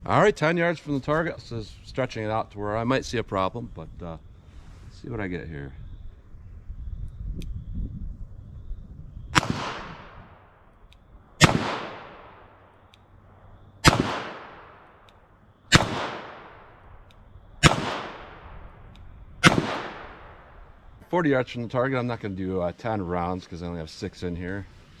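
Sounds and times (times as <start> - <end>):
revolver shots with long echo: 9.4 - 10.4, 11.4 - 12.8, 13.8 - 15.1, 15.7 - 16.9, 17.6 - 20.8.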